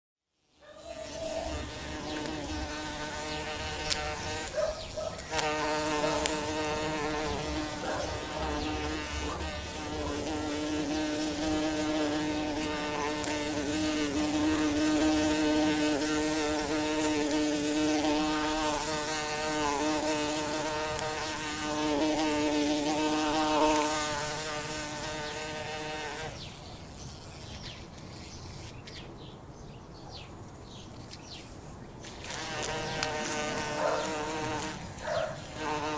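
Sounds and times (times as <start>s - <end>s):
bee buzzing: 0.8s - 26.5s, 32.0s - 35.9s.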